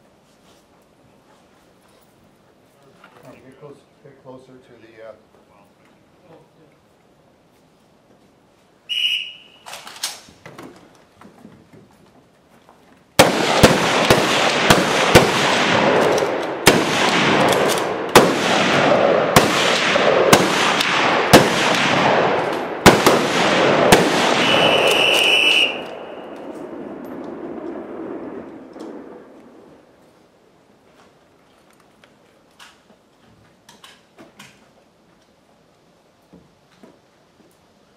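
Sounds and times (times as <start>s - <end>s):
whistle blast: 8.9s - 9.7s, 24.3s - 26.4s
rifle shots echoing: 13.2s - 29.6s.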